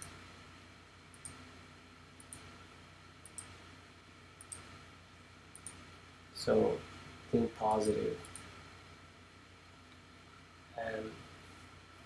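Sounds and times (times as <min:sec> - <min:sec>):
low steady hum: 0:00.0 - 0:12.0
faint sharp clicks: 0:01.1 - 0:01.4, 0:02.2 - 0:02.5, 0:03.2 - 0:03.6, 0:04.4 - 0:04.7, 0:05.5 - 0:05.8, 0:07.8 - 0:08.5.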